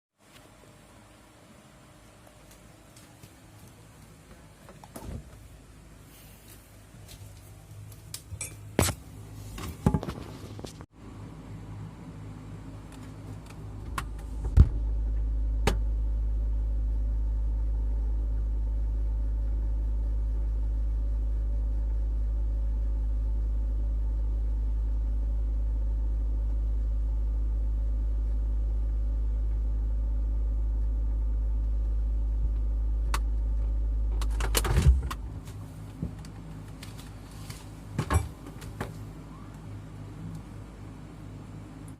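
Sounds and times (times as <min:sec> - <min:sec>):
fridge humming: 0:29.3 - 0:41.9
fridge door opening clatter: 0:34.2 - 0:35.4.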